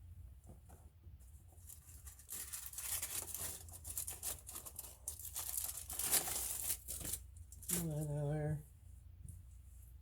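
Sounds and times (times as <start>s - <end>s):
rag rustling and crinkling: 0.4s - 8.3s.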